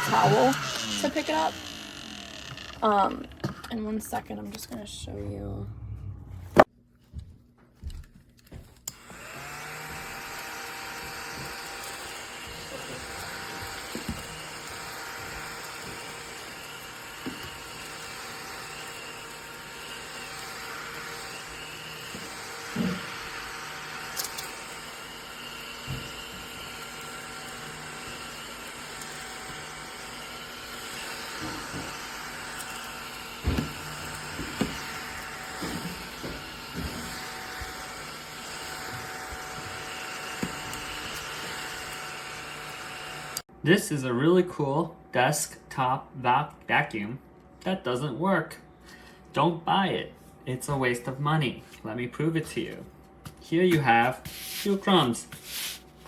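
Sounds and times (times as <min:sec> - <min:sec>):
small vacuum motor whine: 0:00.0 - 0:03.7, 0:08.9 - 0:43.4.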